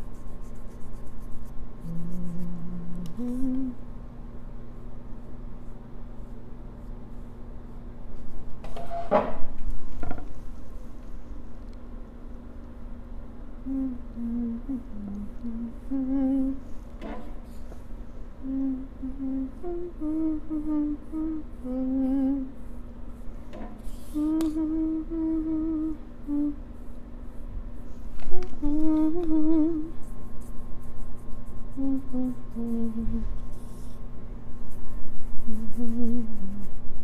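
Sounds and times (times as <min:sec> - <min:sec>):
woman humming: 0:01.8 - 0:03.9, 0:13.6 - 0:16.7, 0:18.4 - 0:22.7, 0:24.0 - 0:26.8, 0:28.2 - 0:30.1, 0:31.5 - 0:33.4, 0:35.1 - 0:37.0.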